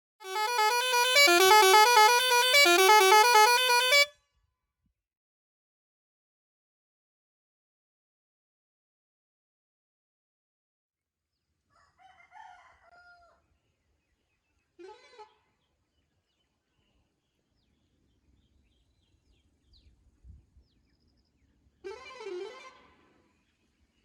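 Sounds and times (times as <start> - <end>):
rooster crowing: 11.7 - 13.4.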